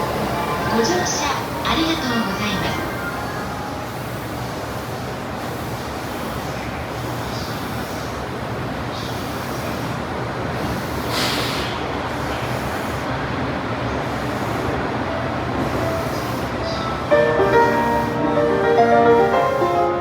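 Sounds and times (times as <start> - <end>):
electric train rumbling: 0.0 - 20.0
brief hiss: 11.1 - 11.8.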